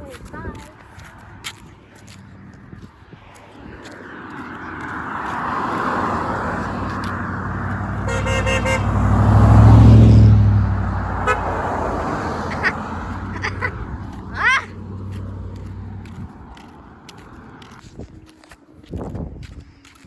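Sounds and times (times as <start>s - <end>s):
vehicle driving past: 2.0s - 17.8s
car horn short toots: 8.0s - 9.7s, 11.1s - 11.7s.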